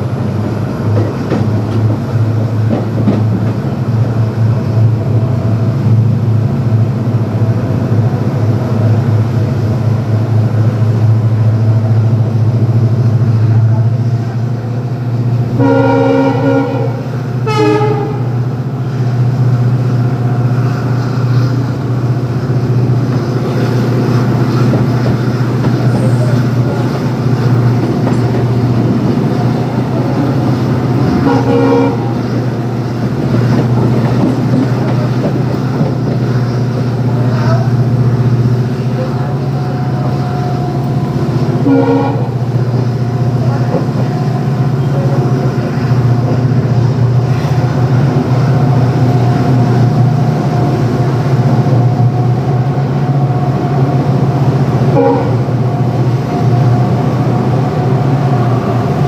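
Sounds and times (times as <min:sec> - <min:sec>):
train running rumble: 0:00.0 - 0:59.0
locomotive horn blasts: 0:15.6 - 0:18.4, 0:31.1 - 0:32.2, 0:41.6 - 0:42.5, 0:54.9 - 0:55.6.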